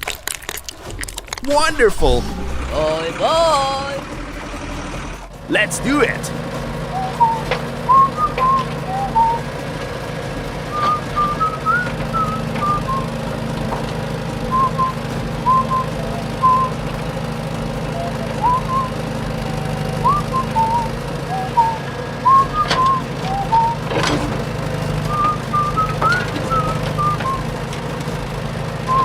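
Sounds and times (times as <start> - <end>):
steady low hum: 0.7 - 29.0
whistled tune: 5.3 - 13.2, 14.4 - 17.0, 17.6 - 24.2, 24.9 - 27.6.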